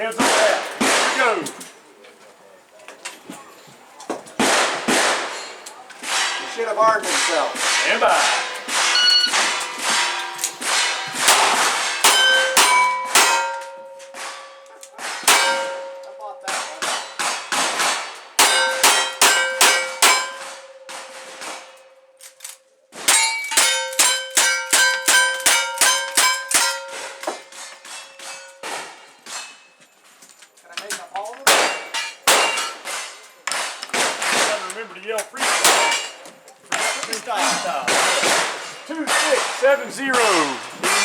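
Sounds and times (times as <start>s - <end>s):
rapid gunfire: 4.4s - 5.4s
steel plate ringing: 5.2s - 17.6s, 18.4s - 22.2s, 23.1s - 29.8s.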